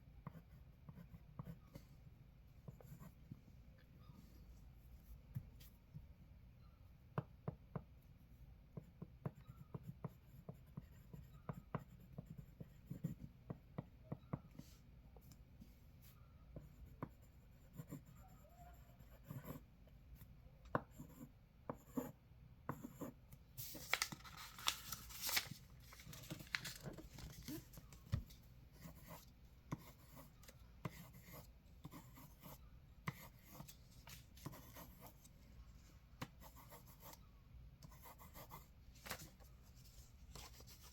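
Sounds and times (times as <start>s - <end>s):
pencil scribbling on paper: 16.6s - 19.7s, 28.8s - 33.7s, 34.4s - 35.3s, 36.4s - 37.2s, 37.8s - 38.7s.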